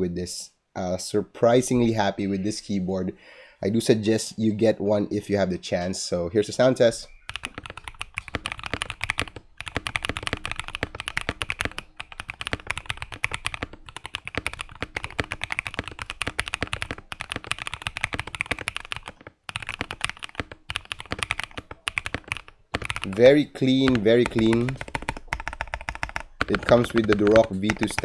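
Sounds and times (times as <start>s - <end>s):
fast typing on mechanical keyboard: 7.2s - 28.0s.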